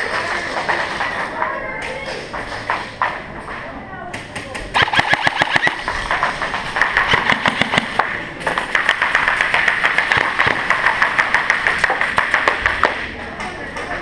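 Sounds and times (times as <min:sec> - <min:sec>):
toy guns firing rapidly: 0:04.7 - 0:13.0.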